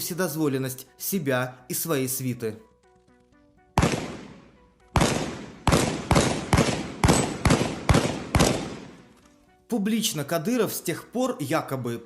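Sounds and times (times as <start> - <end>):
sharp ringing bangs: 3.8 - 9.0.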